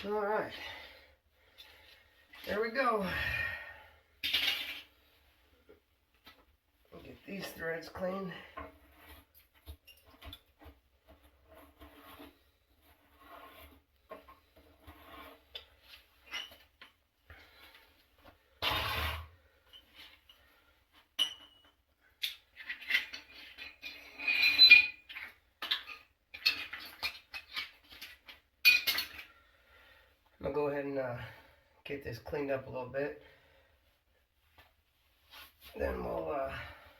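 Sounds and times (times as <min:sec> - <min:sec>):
metal threads scraping: 0:07.0 - 0:16.8, 0:22.6 - 0:28.2.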